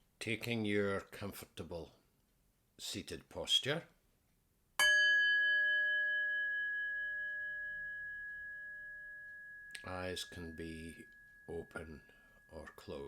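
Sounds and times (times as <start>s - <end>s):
meditation bell ringing: 4.8s - 13.0s.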